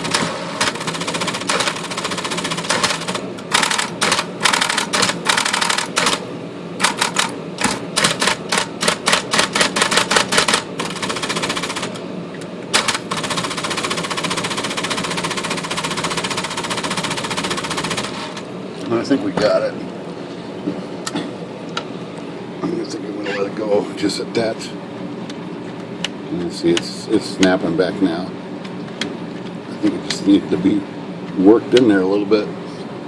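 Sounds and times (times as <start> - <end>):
typewriter carriage clatter: 0.0 - 6.2, 6.8 - 12.0, 12.8 - 18.4
typing strikes: 0.0 - 6.2, 6.8 - 12.0, 12.7 - 18.2
electric typewriter motor hum: 0.0 - 18.5.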